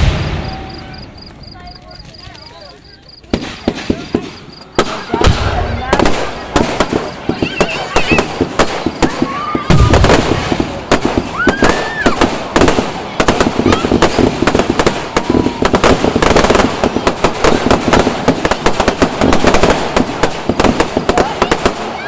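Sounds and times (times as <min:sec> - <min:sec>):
heavy firework boom: 0:00.0 - 0:01.6, 0:03.3 - 0:21.8
whistling firework shell: 0:00.0 - 0:02.2, 0:07.0 - 0:10.2, 0:11.2 - 0:12.3
fireworks crackling pops: 0:00.0 - 0:22.0.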